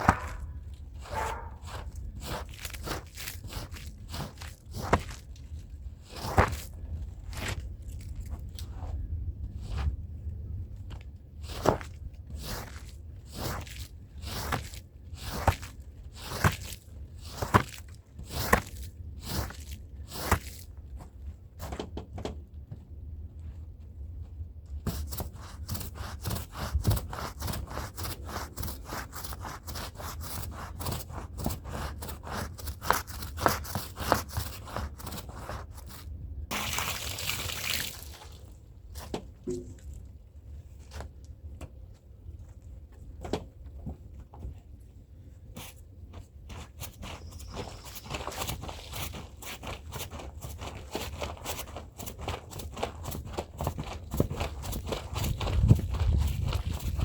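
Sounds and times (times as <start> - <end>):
brush scrubbing a wet rug: 1.0 - 5.3, 11.4 - 20.6, 24.9 - 38.4.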